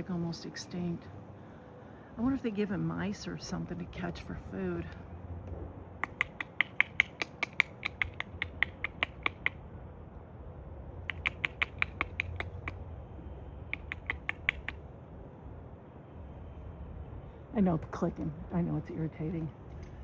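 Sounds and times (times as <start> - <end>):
outdoor background noise: 0.0 - 20.0
rapid sharp clicking: 6.0 - 9.6, 11.0 - 12.8, 13.7 - 14.8.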